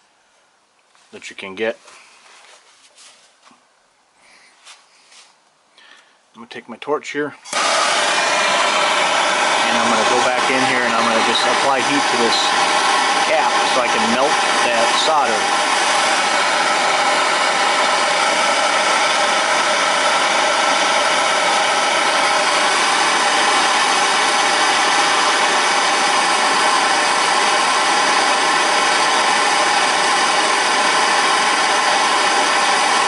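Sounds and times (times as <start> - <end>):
gas torch hissing: 7.5 - 33.0.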